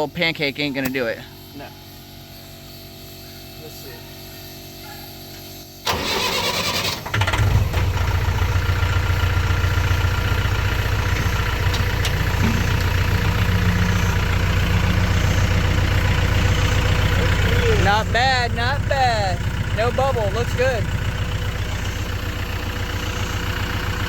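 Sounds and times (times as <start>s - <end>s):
tractor engine starting and idling: 5.8s - 24.0s.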